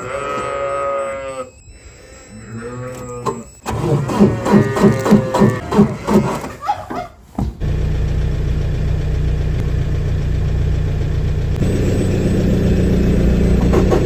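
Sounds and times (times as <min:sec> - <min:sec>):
diesel engine starting and idling: 0:03.5 - 0:05.6, 0:07.6 - 0:14.0.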